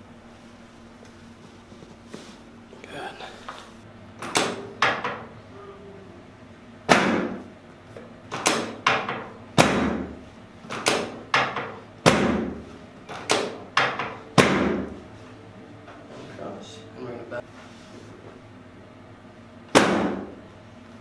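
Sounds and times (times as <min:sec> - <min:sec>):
sharp knocks and thuds: 0:06.9 - 0:07.4, 0:08.3 - 0:12.6, 0:19.7 - 0:20.3.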